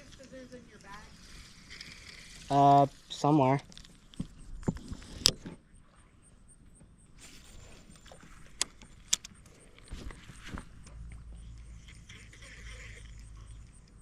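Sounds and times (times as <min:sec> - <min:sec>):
sharp clicks: 0:07.9 - 0:10.0.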